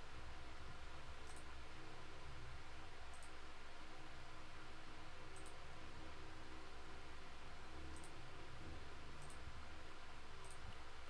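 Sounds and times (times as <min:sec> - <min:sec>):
room noise hum and hiss: 0:00.0 - 0:11.0.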